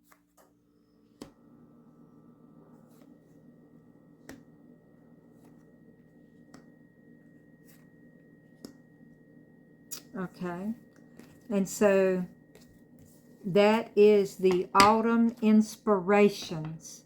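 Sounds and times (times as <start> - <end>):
faint steady hum: 0.0 - 17.0
cards clicking and tapping on table: 4.2 - 4.5.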